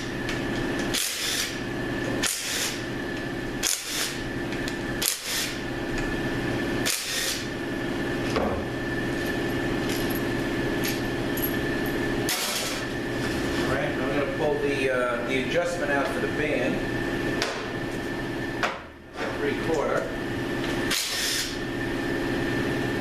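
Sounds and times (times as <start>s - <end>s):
steady hum: 0.0s - 23.0s
pneumatic tool bursts: 0.9s - 1.6s, 2.2s - 2.8s, 3.6s - 4.2s, 5.0s - 5.6s, 6.8s - 7.5s, 12.3s - 12.8s, 20.9s - 21.6s.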